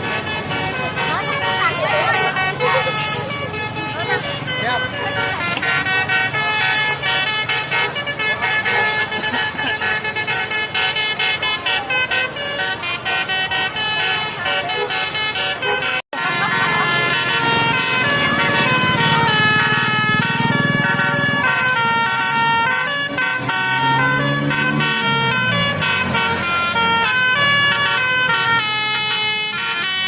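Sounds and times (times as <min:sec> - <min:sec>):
multi-tone air horns melody: 0:00.0 - 0:30.0.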